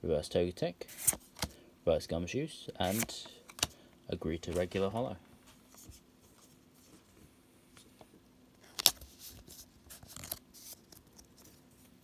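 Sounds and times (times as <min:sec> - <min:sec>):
cards rustling and clicking: 0:00.9 - 0:01.6, 0:02.8 - 0:03.8, 0:07.7 - 0:12.0.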